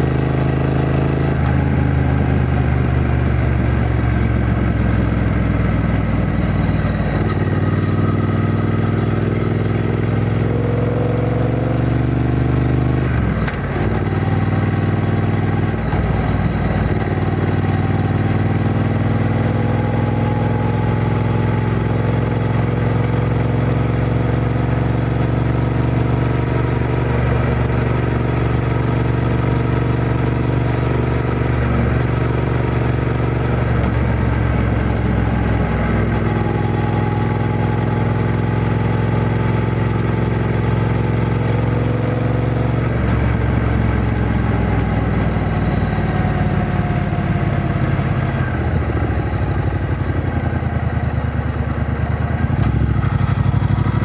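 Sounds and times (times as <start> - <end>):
motorcycle engine running: 0.0 - 54.0.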